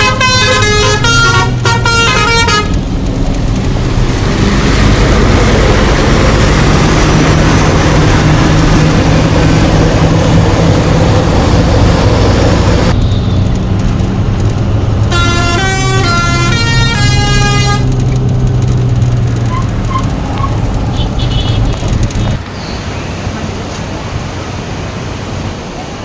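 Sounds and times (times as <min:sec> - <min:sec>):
musical bus horn tune: 0:00.0 - 0:02.8, 0:15.0 - 0:18.1, 0:20.9 - 0:22.4
bus engine running: 0:00.0 - 0:26.0
road noise: 0:00.0 - 0:26.0.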